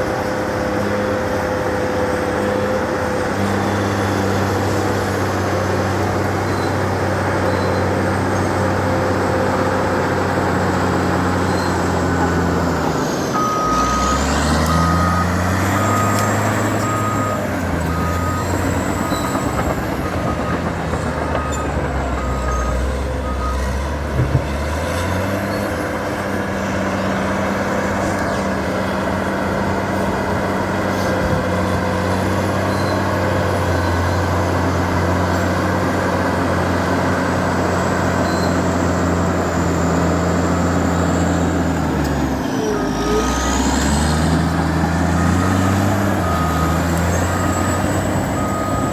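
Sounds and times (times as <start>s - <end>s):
bulldozer diesel engine running: 0.0s - 48.9s
reversing alarm beeping: 11.3s - 24.4s, 37.4s - 48.9s.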